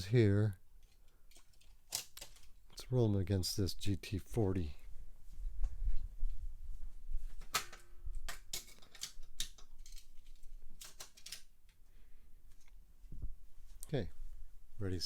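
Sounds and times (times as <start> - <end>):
toy cars clicking on plastic track: 0.8 - 2.5, 8.3 - 11.5.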